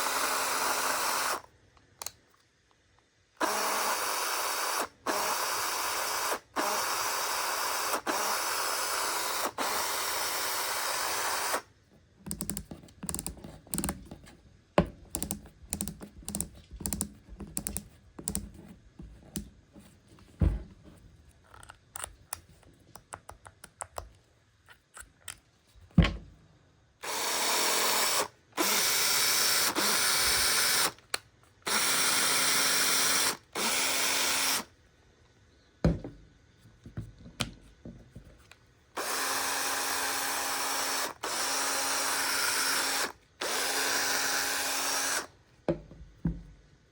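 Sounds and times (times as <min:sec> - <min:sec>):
drill motor running: 0:00.0 - 0:01.4, 0:03.4 - 0:11.6, 0:27.0 - 0:31.0, 0:31.7 - 0:34.7, 0:39.0 - 0:45.3.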